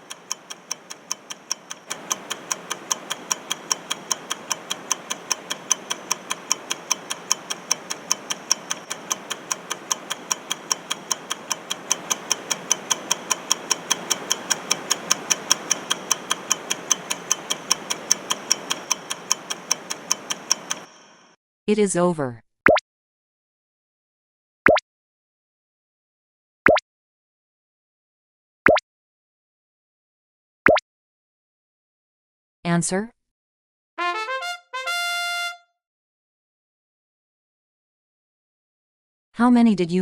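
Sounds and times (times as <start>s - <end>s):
clock ticking quickly: 0.0s - 21.0s
steady hiss: 0.0s - 21.3s.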